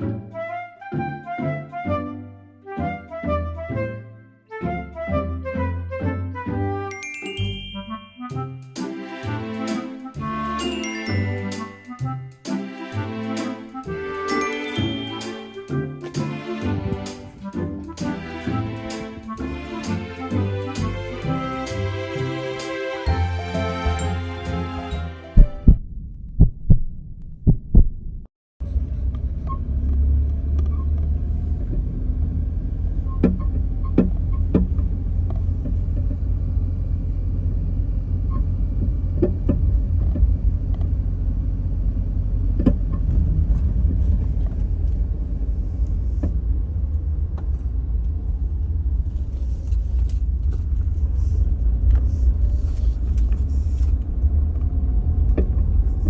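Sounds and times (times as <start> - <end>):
van engine rumble: 28.6 - 56.0.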